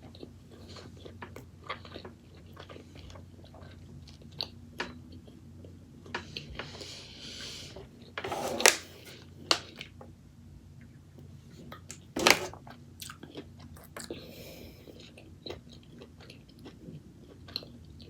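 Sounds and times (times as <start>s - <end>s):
person chewing food: 0.0s - 7.0s, 11.5s - 18.0s.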